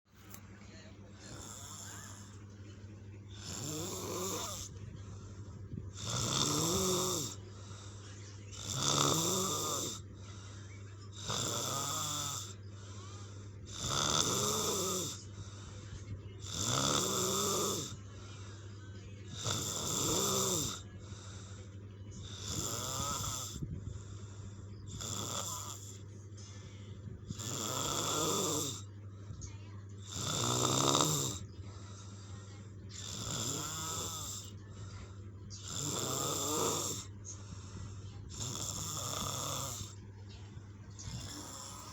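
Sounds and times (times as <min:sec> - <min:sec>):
steady low hum: 0:00.1 - 0:41.9
person snoring: 0:01.2 - 0:02.4, 0:03.3 - 0:04.8, 0:05.9 - 0:10.5, 0:11.1 - 0:15.7, 0:16.4 - 0:18.5, 0:19.3 - 0:21.6, 0:22.2 - 0:26.0, 0:27.3 - 0:28.9, 0:30.0 - 0:32.2, 0:33.0 - 0:34.5, 0:35.6 - 0:40.0, 0:41.0 - 0:41.9.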